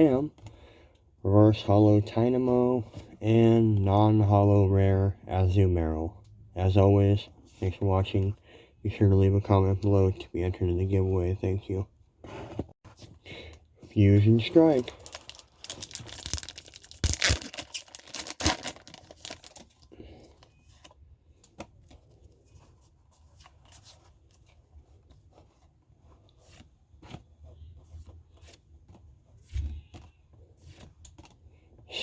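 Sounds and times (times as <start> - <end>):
foil wrapper crinkling and tearing: 14.2 - 20.0.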